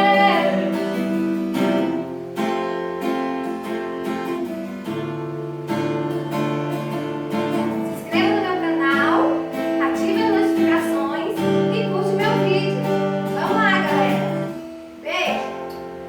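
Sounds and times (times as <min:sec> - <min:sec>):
person singing: 0:00.0 - 0:01.3
acoustic guitar strumming: 0:00.0 - 0:16.0.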